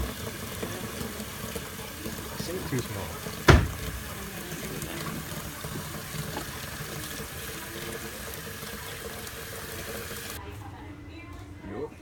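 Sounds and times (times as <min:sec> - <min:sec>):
tap water running into a container: 0:00.0 - 0:10.4
sharp knock: 0:03.5 - 0:04.1.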